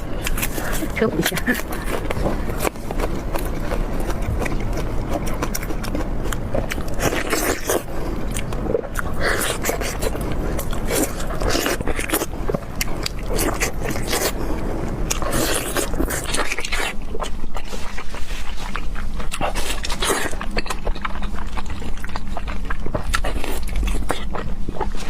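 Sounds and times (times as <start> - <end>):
crunchy chewing bites: 0.0 - 25.0.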